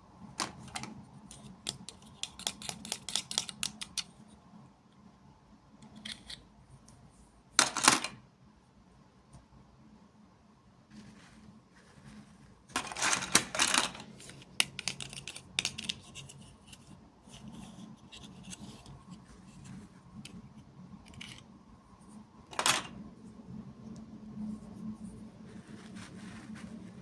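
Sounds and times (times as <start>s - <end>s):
packaging rustling and scraping: 10.9s - 16.6s, 25.4s - 27.0s.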